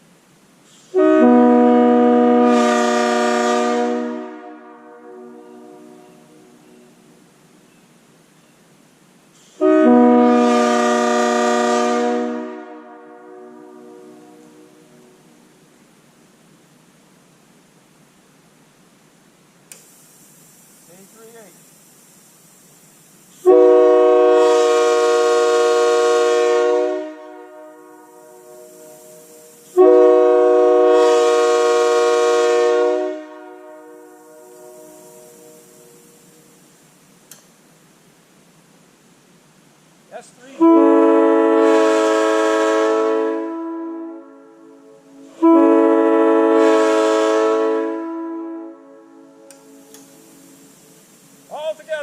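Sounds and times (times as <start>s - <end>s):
locomotive air horn blast: 0.7s - 7.0s, 9.4s - 15.4s, 23.4s - 36.6s, 40.2s - 51.8s.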